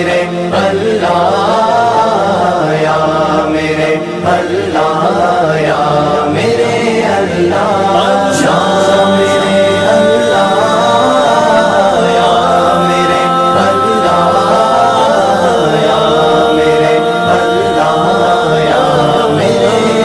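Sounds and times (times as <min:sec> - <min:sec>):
person singing ornamented notes: 0:04.3 - 0:20.0.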